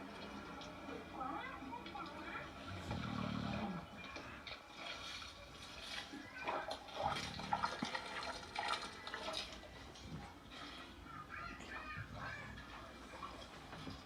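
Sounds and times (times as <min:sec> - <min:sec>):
pet snoring: 0:02.6 - 0:03.9.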